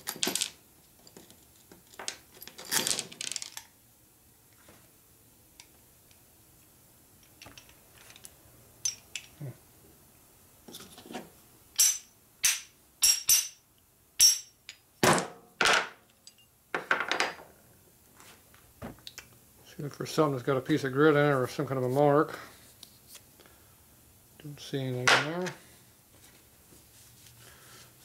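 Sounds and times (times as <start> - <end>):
metal parts clinking: 7.4 - 9.4, 11.8 - 13.6, 14.2 - 14.8.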